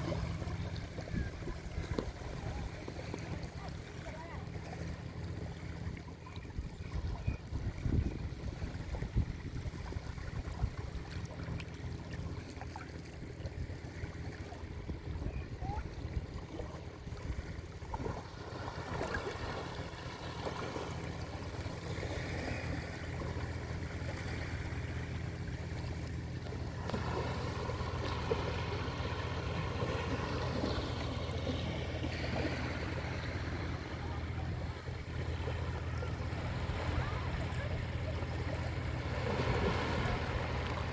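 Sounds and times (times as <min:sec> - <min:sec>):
sea waves washing onto beach: 0:00.0 - 0:06.0, 0:17.6 - 0:40.9
distant voices of people: 0:00.0 - 0:09.0, 0:26.3 - 0:40.9.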